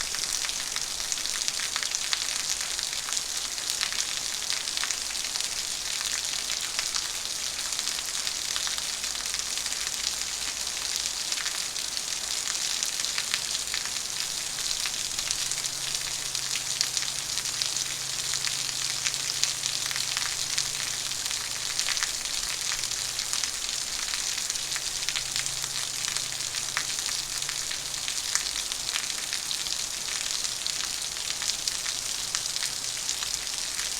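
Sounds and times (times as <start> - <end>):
heavy rain: 0.0 - 33.9.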